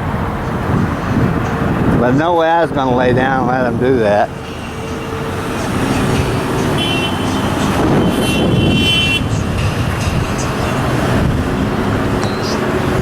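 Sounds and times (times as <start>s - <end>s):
cars and trucks passing: 0.0s - 13.0s
high-pitched tone: 12.0s - 12.7s.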